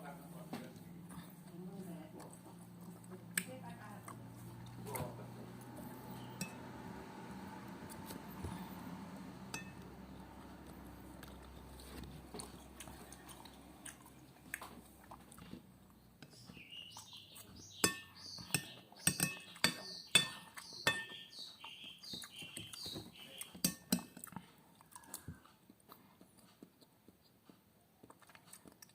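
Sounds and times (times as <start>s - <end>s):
spoon clinking against a plate: 6.2s - 6.7s, 9.5s - 9.8s, 17.7s - 24.2s.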